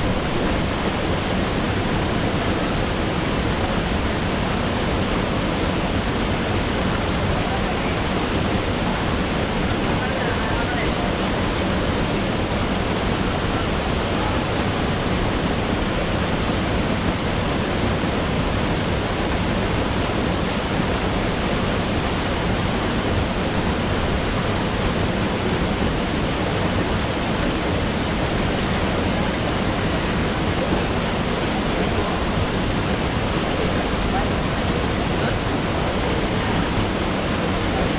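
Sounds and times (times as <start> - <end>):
waterfall rushing: 0.0 - 37.9.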